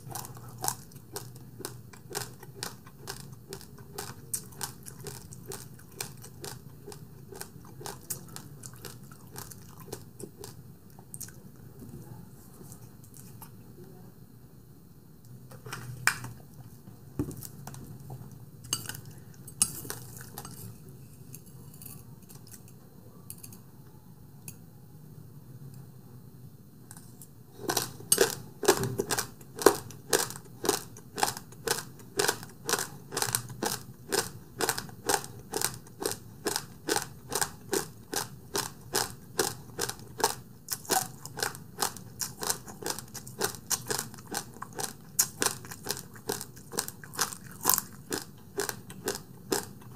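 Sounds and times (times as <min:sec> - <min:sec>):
close-miked chewing: 0:00.0 - 0:11.5, 0:29.0 - 0:49.9.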